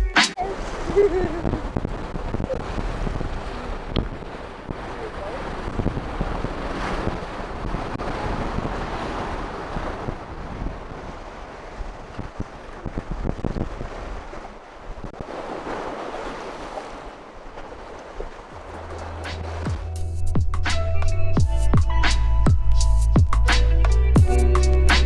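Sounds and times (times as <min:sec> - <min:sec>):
waves breaking on shore: 0:00.0 - 0:20.0
wind buffeting microphone: 0:00.4 - 0:25.0.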